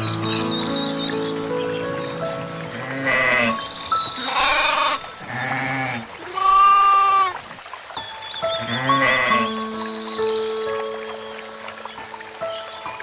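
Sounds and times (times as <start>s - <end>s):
bird chirping: 0.0s - 6.7s, 7.7s - 13.0s
soft background music: 0.0s - 6.8s, 7.7s - 13.0s
goats bleating: 4.2s - 7.3s.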